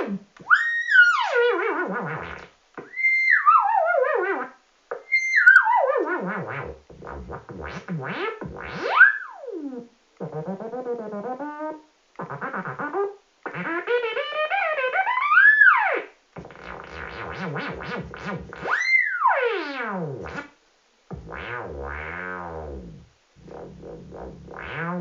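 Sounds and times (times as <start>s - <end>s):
warbling synthesizer tones: 21.1s - 25.0s.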